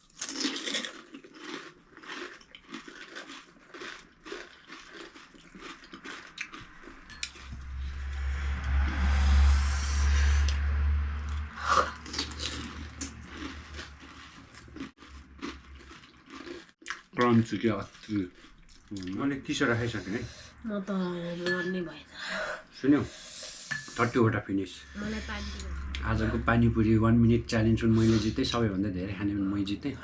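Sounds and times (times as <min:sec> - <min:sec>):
crunchy shells being chewed: 0:00.0 - 0:07.5, 0:11.9 - 0:19.9
low rumble with hiss: 0:06.8 - 0:14.8, 0:23.9 - 0:30.0.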